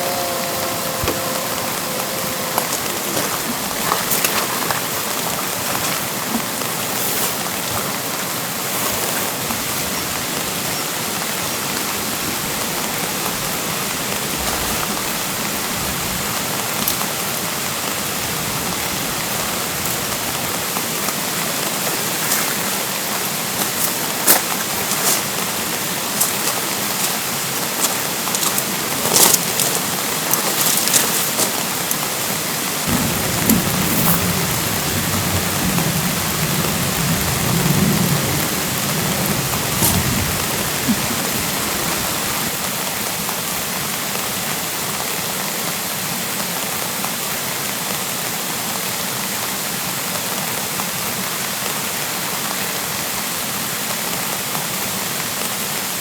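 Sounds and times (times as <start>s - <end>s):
steady rain hiss: 0.0s - 56.0s
raindrop hits: 32.9s - 42.5s.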